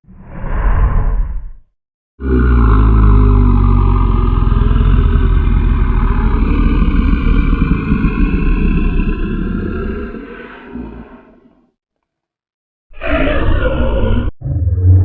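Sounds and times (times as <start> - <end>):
horror sound effect: 2.2 - 11.4, 12.9 - 15.0
deep creature growl: 2.2 - 11.8, 12.9 - 15.0.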